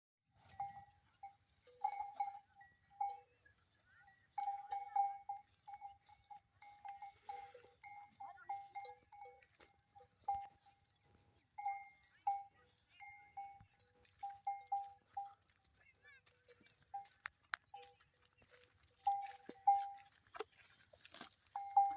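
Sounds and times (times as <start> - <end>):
livestock bells clanking: 0.3 - 21.9.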